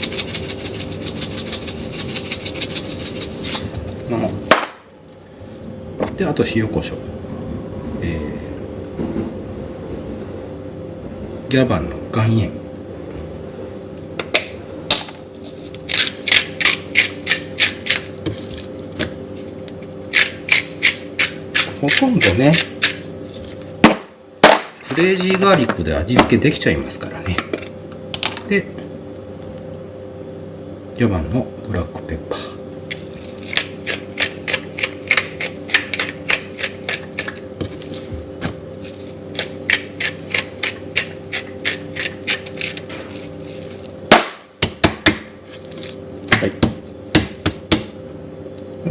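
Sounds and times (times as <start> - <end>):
gritty salt grinding: 0.0 - 4.5, 15.3 - 23.7, 32.9 - 38.1, 38.8 - 44.0, 45.4 - 46.1.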